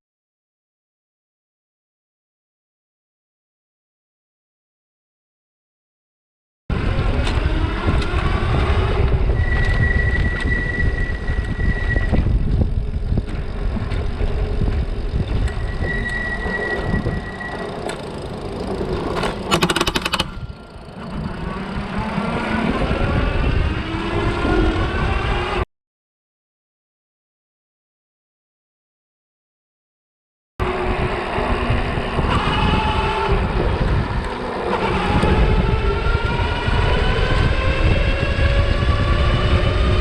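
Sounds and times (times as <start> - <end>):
electric bike motor whine: 6.7 - 25.5, 30.6 - 40.0
wind noise: 6.7 - 25.6, 30.6 - 40.0
road rumble: 12.5 - 25.2
harsh rattling burst: 18.0 - 21.1.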